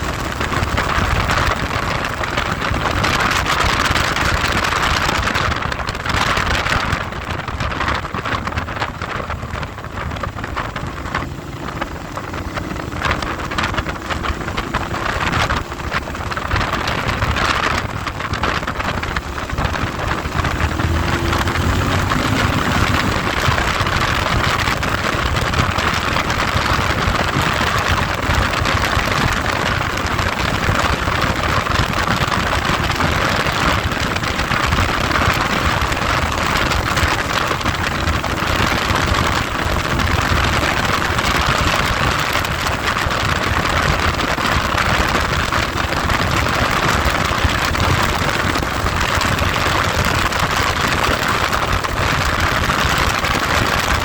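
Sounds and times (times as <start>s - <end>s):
vehicle and road rumble: 0.0s - 54.0s
wind buffeting microphone: 0.0s - 54.0s.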